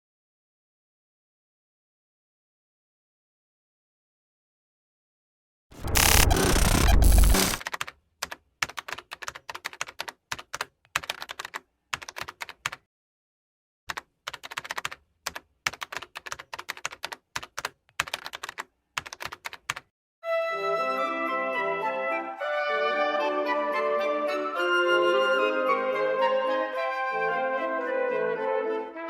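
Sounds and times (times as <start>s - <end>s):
rapid irregular clicking: 5.8s - 12.8s, 13.9s - 19.9s.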